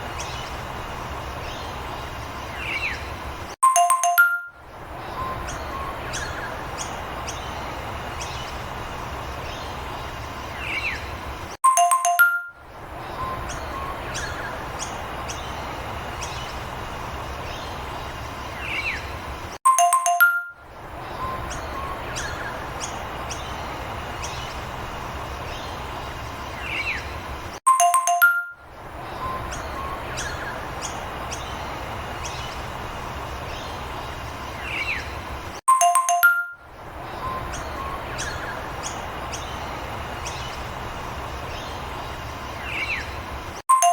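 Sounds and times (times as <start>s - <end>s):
bird chirps: 1.4s - 8.7s, 9.4s - 16.8s, 19.7s - 24.7s, 25.4s - 43.9s
bright chime: 3.6s - 4.6s, 11.6s - 12.6s, 19.7s - 20.6s, 27.7s - 28.6s, 35.7s - 36.7s.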